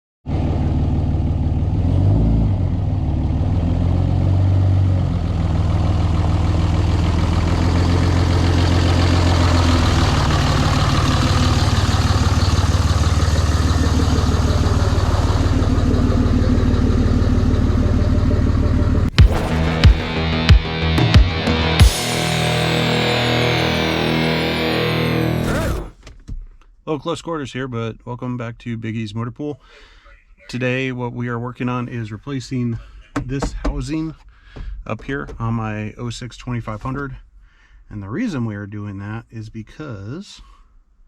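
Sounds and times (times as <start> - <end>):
pickup truck engine running: 2.6 - 20.5, 21.8 - 25.9.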